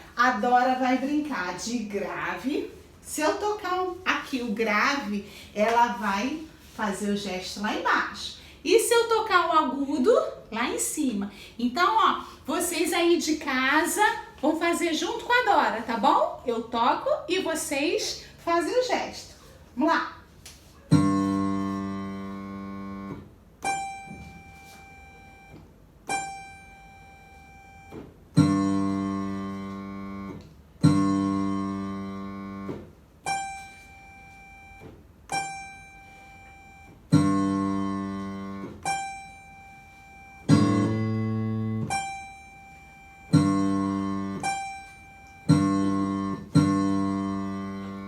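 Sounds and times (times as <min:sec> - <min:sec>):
instrument notes ringing: 0:20.9 - 0:48.0.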